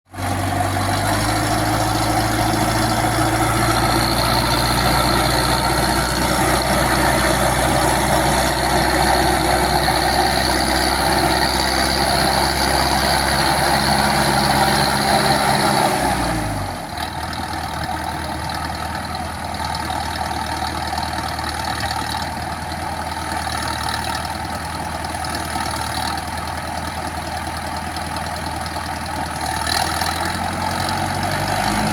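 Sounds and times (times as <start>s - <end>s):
tractor engine running: 0.1s - 31.9s.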